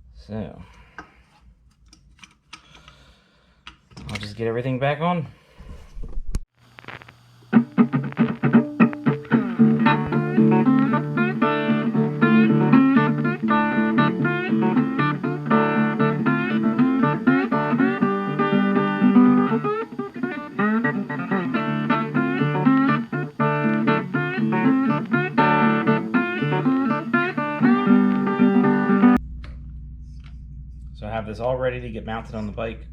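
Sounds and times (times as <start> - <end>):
plucked guitar music: 7.5 - 29.2.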